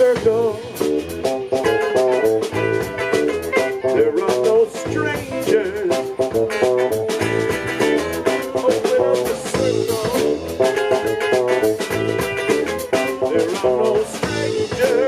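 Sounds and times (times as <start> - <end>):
live band playing: 0.0 - 15.0
person singing: 3.5 - 11.4, 12.0 - 15.0.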